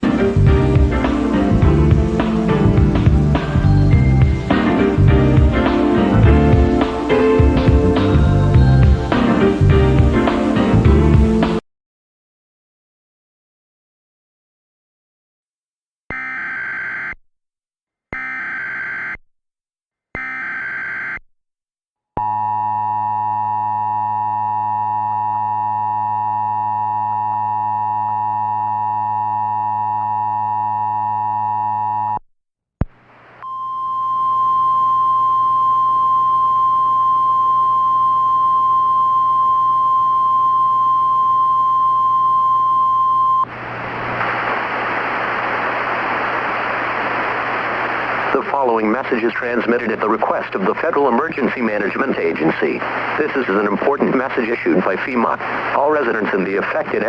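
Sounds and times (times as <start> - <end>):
radio static: 43.5 - 57.0.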